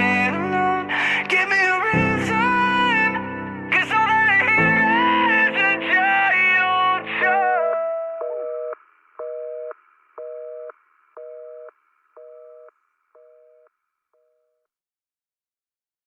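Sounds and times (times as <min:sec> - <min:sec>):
telephone busy signal: 0:08.2 - 0:13.7.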